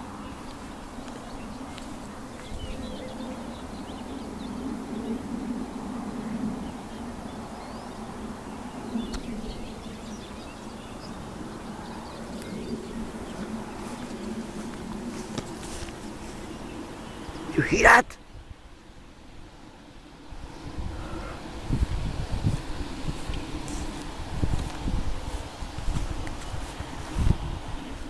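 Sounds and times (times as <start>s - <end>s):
small birds chirping: 6.6s - 17.6s.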